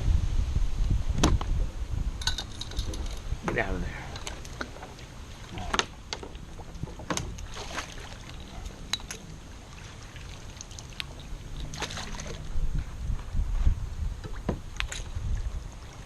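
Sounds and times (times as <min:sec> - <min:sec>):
low rumble: 0:00.0 - 0:04.7, 0:11.2 - 0:15.7.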